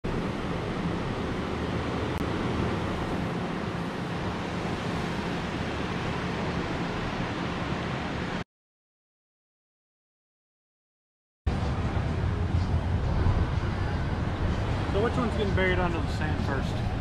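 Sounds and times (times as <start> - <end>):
ocean surf breaking: 0.1 - 8.4, 11.5 - 17.0.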